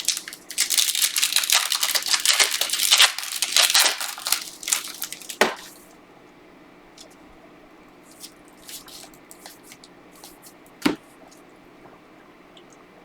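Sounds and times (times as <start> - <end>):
wrapper being torn and crumpled: 0.0 - 5.8.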